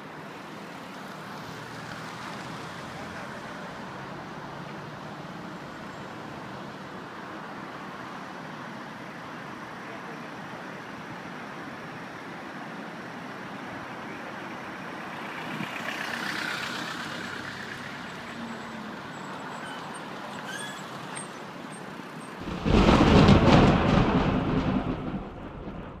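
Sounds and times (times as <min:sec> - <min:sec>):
road traffic noise: 0:00.0 - 0:25.4
vehicle passing: 0:15.0 - 0:19.5
deep rumbling rush: 0:22.4 - 0:26.0.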